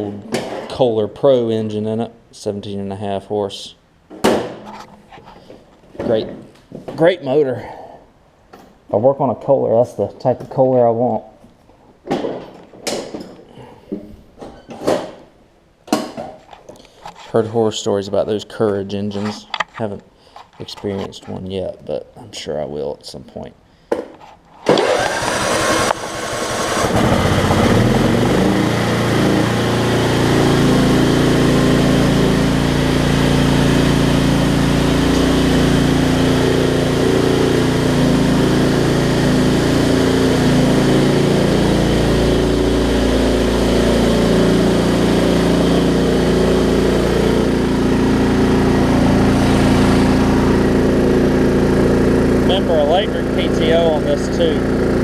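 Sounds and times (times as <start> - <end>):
riding mower engine starting: 24.6 - 55.0.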